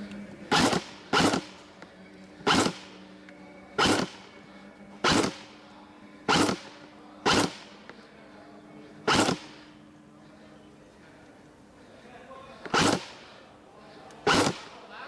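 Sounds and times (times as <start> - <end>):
airsoft gun shots: 0.5 - 1.6, 2.4 - 2.9, 3.8 - 4.3, 5.0 - 5.5, 6.3 - 7.8, 9.1 - 9.6, 12.7 - 13.3, 14.2 - 14.8.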